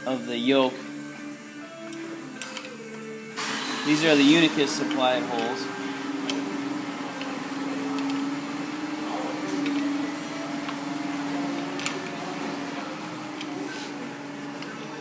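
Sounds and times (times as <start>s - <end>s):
steady hum: 1.3s - 15.0s
spanner wrench clicking on metal: 1.8s - 3.0s.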